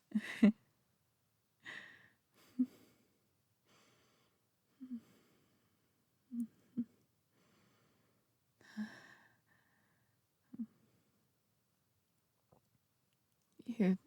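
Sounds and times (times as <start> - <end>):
woman breathing and sighing: 1.6 - 3.1, 3.7 - 11.2.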